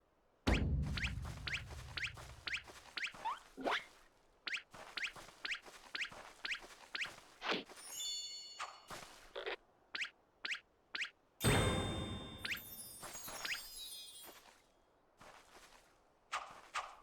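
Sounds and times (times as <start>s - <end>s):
low thump: 0.5s - 2.5s, 11.4s - 12.6s
high ringing tones: 11.4s - 14.2s.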